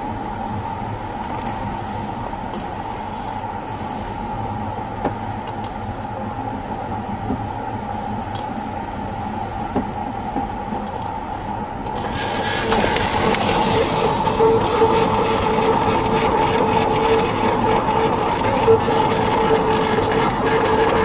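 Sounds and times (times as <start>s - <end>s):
hiss: 3.6s - 4.4s, 6.4s - 7.3s, 9.0s - 10.0s.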